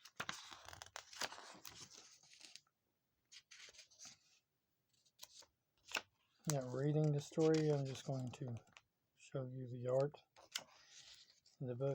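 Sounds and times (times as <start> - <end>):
paper pages rustling: 0.0 - 2.6, 3.3 - 4.4, 5.0 - 8.9, 10.0 - 11.6.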